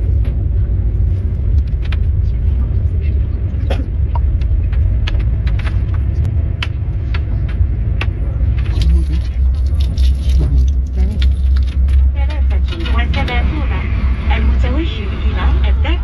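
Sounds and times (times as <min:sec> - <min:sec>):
train carriage low rumble: 0:00.0 - 0:16.0
sharp clicks and rattles: 0:01.4 - 0:02.2, 0:04.1 - 0:13.5.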